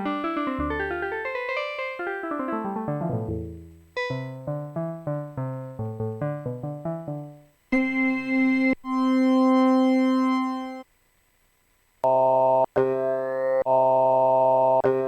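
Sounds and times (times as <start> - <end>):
synthesizer notes and chords: 0.0 - 10.8.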